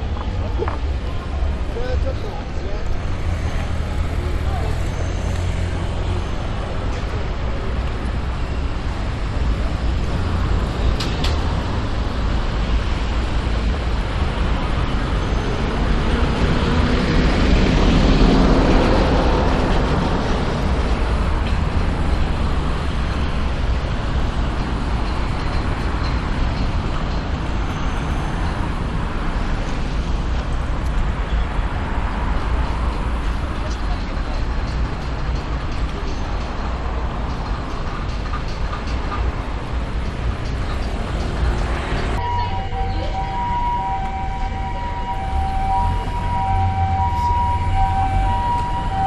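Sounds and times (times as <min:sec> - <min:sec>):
street traffic rumble: 0:00.0 - 0:49.0
vehicle passing: 0:40.3 - 0:49.0.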